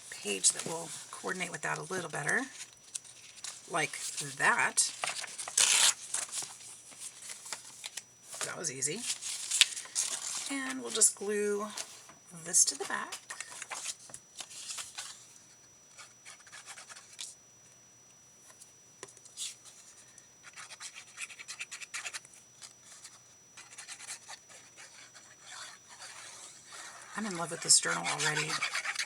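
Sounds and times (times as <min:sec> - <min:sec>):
paper rustling: 0:00.2 - 0:11.1, 0:12.7 - 0:15.3
scratchy rubbing on paper: 0:16.0 - 0:17.2, 0:20.4 - 0:22.2, 0:22.8 - 0:29.0.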